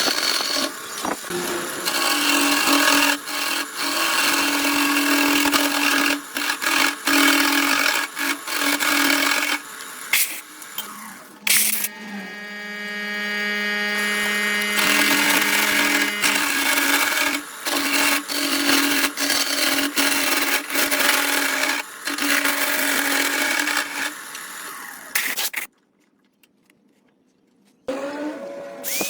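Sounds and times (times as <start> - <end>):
grinding wood: 0.0 - 25.6
power tool motor whining: 0.0 - 25.7, 27.9 - 29.0.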